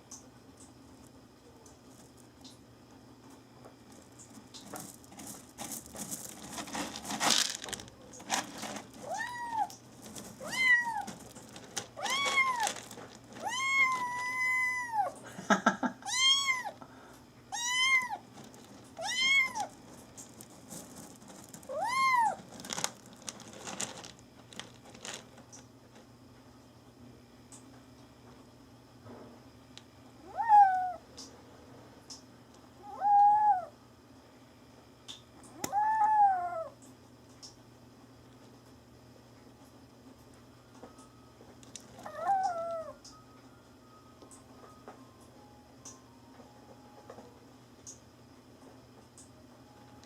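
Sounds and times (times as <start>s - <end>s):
rustling and scratching: 3.7s - 14.5s, 18.1s - 26.1s
kitten meowing: 9.0s - 9.8s, 10.4s - 11.1s, 12.0s - 12.7s, 13.4s - 15.2s, 16.0s - 16.8s, 17.5s - 18.2s, 19.0s - 19.7s, 21.7s - 22.4s, 30.2s - 31.0s, 32.8s - 33.7s, 35.6s - 36.7s, 42.0s - 43.0s.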